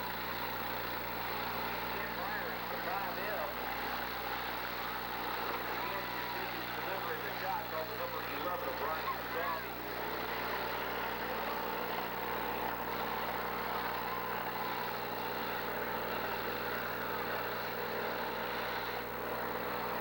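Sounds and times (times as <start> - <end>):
car engines running: 0.0 - 20.0.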